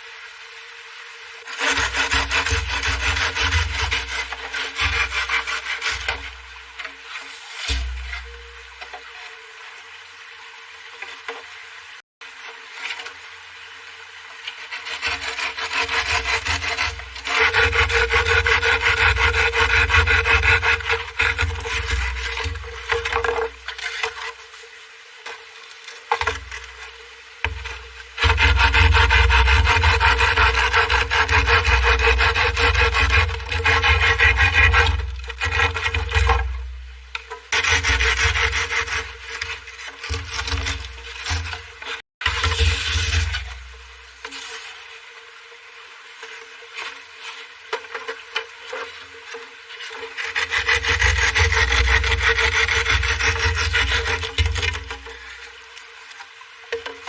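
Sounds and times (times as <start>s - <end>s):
hand tool rasping wood: 1.5s - 8.6s, 14.7s - 24.5s, 26.2s - 44.7s, 50.0s - 55.5s.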